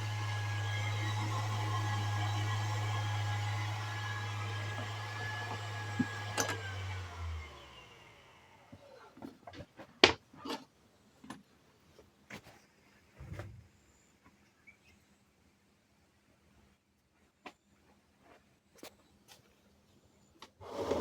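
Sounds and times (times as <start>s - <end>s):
motor winding down: 0.0s - 9.0s
pump motor humming and whining: 0.0s - 9.1s.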